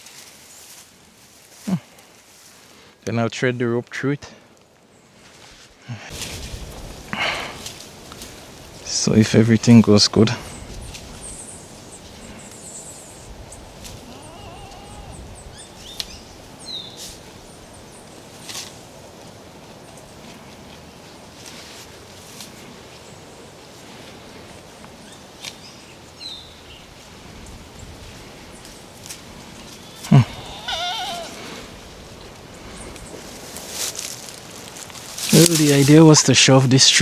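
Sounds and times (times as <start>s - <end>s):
sheep bleating: 13.8s - 15.4s, 29.9s - 31.7s.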